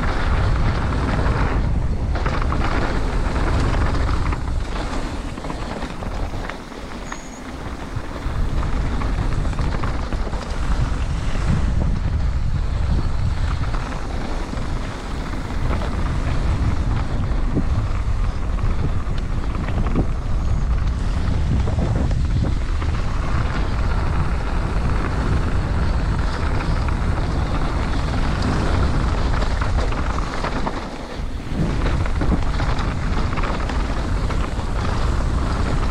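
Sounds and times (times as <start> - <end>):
bike clicks and rattles: 0.0 - 35.9
wind noise on microphone: 0.0 - 35.9
low rumble: 7.4 - 35.9.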